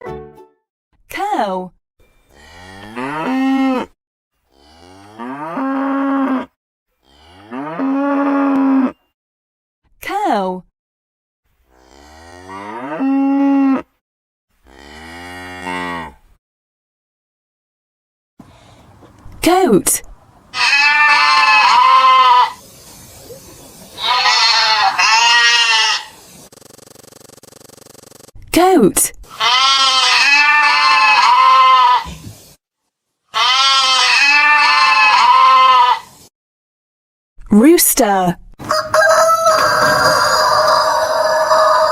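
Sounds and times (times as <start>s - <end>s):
cow mooing: 18.4s - 26.1s
goat bleating: 18.4s - 26.2s, 29.3s - 32.3s, 33.3s - 36.1s.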